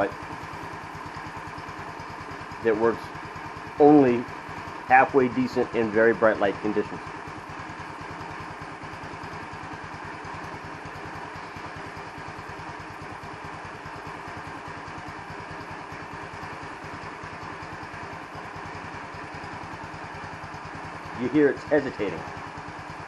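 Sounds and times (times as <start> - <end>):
scooter engine idling: 0.0 - 5.1, 5.8 - 23.0.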